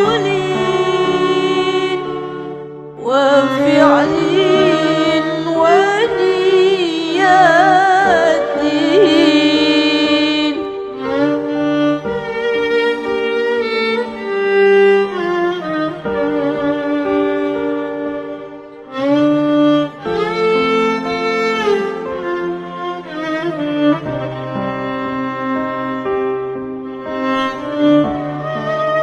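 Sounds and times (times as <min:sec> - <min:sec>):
held lower notes: 0:03.6 - 0:11.0
ornamented wavering melody: 0:03.7 - 0:11.0.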